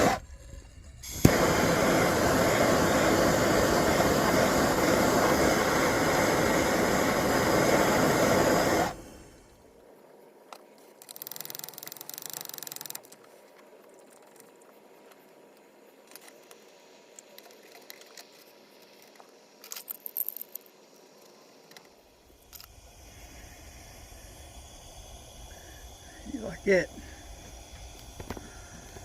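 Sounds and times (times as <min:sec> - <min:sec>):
short hiss: 0:01.0 - 0:09.6, 0:16.2 - 0:29.0
metallic clinks and rattles: 0:19.6 - 0:20.7.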